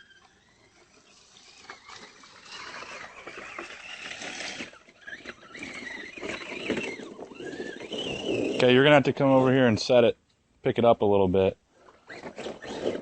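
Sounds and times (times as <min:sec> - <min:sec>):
electric motor and gears whining: 0:00.0 - 0:09.0, 0:12.0 - 0:13.0
tires and chassis clicking and scraping: 0:00.0 - 0:09.6, 0:11.8 - 0:13.0.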